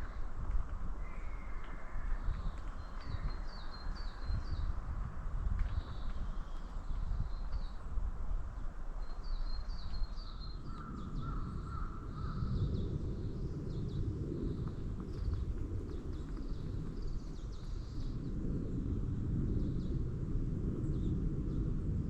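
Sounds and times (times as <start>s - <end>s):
steady low rumble: 10.8s - 22.0s.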